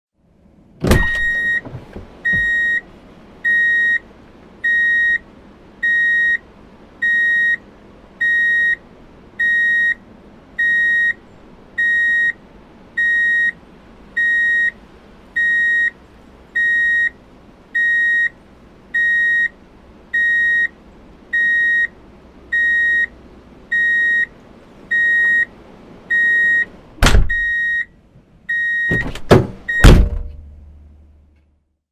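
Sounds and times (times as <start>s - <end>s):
loud thump: 0.8s - 2.6s, 27.0s - 27.5s, 28.9s - 30.5s
reverse warning beeper: 0.9s - 2.8s, 3.4s - 4.0s, 4.6s - 5.2s, 5.8s - 6.4s, 7.0s - 7.6s, 8.2s - 8.8s, 9.4s - 10.0s, 10.6s - 11.2s, 11.8s - 12.4s, 13.0s - 13.6s, 14.2s - 14.8s, 15.4s - 16.0s, 16.6s - 17.2s, 17.8s - 19.6s, 20.2s - 21.9s, 22.5s - 23.1s, 23.7s - 24.3s, 24.9s - 25.5s, 26.1s - 26.7s, 27.3s - 30.0s.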